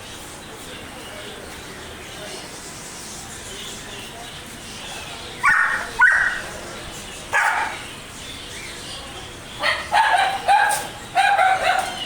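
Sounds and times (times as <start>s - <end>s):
dog barking: 5.4s - 6.4s, 7.3s - 7.8s, 9.6s - 12.0s.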